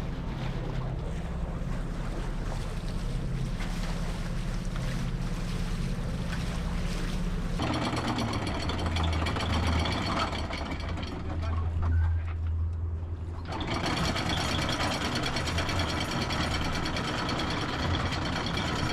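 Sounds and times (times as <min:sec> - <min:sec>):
steady low drone: 0:00.0 - 0:07.8
water noise: 0:00.0 - 0:18.9
wind: 0:00.0 - 0:18.9
rapid mechanical ticking: 0:07.6 - 0:11.6, 0:13.4 - 0:18.9
low hum: 0:11.1 - 0:13.5.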